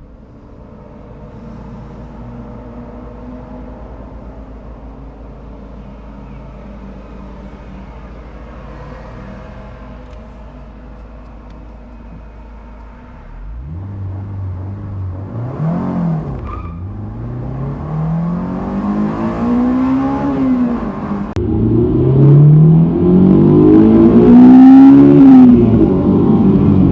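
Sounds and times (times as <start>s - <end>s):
car engine revving: 13.1s - 26.9s.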